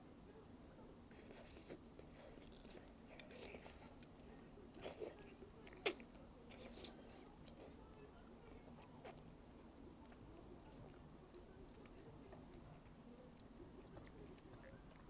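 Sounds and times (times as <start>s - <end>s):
person chewing: 1.1s - 8.0s, 8.6s - 15.0s.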